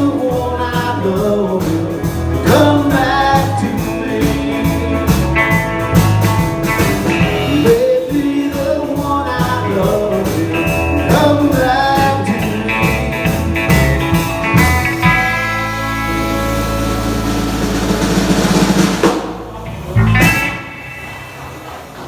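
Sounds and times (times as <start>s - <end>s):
person singing: 0.0s - 6.0s, 7.2s - 13.5s
live band playing: 0.0s - 22.0s.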